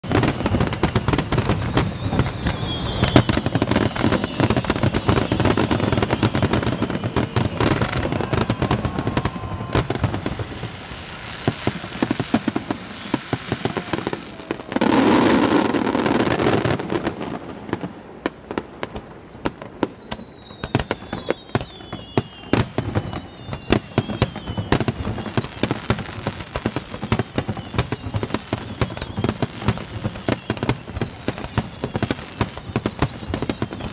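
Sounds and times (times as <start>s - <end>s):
fireworks bangs and crackling: 0.0s - 33.9s.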